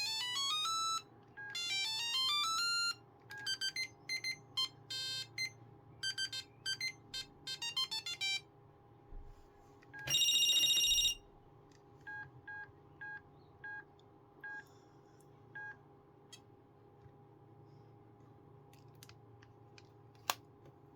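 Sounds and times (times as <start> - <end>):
beeping phone ringtone tune: 0.0 - 8.4, 10.0 - 11.2.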